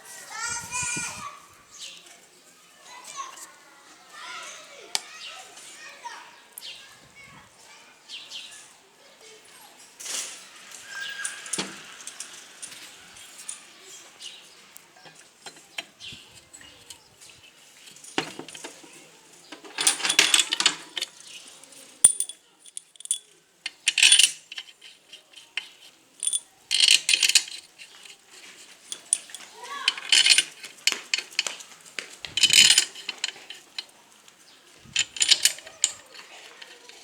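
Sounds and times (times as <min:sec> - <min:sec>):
metal tools clinking and rattling: 0:10.1 - 0:13.7, 0:15.0 - 0:21.4, 0:22.0 - 0:34.0, 0:34.8 - 0:37.0.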